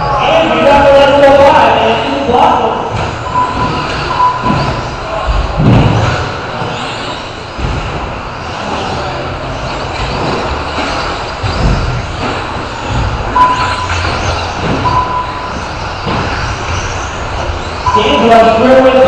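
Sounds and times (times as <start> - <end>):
low thuds: 2.8 - 18.0
short high beeps: 3.2 - 4.6, 13.4 - 14.0, 14.8 - 15.5, 17.8 - 18.6
rc truck motors running: 6.7 - 18.0.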